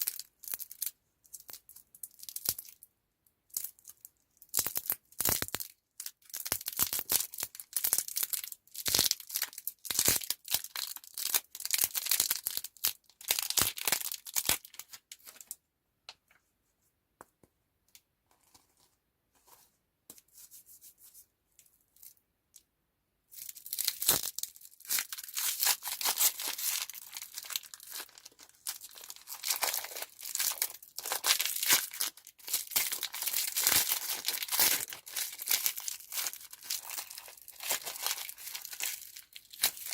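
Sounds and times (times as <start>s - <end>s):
candy wrappers crinkling: 0.0s - 2.8s, 3.5s - 15.6s, 23.3s - 39.9s.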